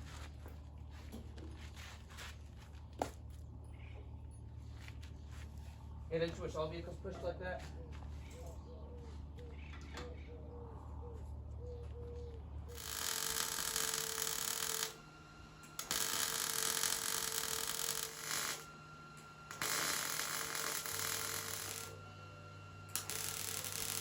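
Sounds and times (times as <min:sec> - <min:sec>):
welder crackling hiss: 0:23.0 - 0:24.0.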